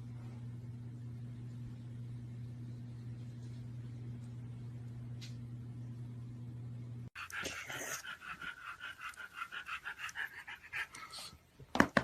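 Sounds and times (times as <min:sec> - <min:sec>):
low steady hum: 0:00.0 - 0:12.0
dog panting with faint whine: 0:07.2 - 0:11.4.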